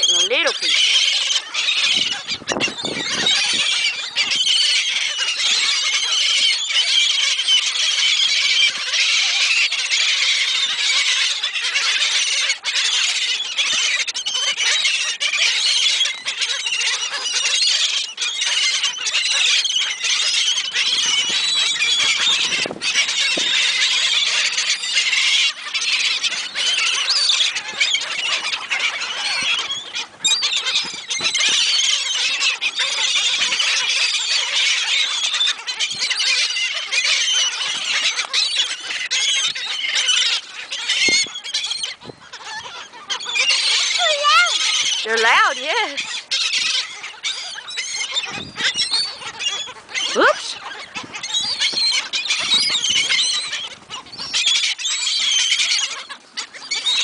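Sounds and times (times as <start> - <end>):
gulls crying: 0.0 - 9.0, 37.1 - 54.0.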